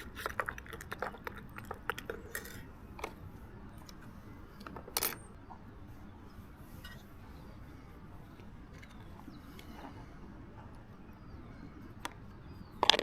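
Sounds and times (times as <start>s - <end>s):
small hard objects clicking: 12.8s - 13.0s.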